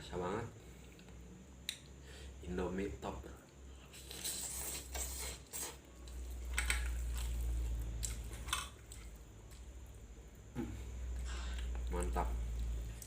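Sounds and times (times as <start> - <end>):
low steady hum: 0.0 - 13.0
chewing and slurping: 3.8 - 9.6.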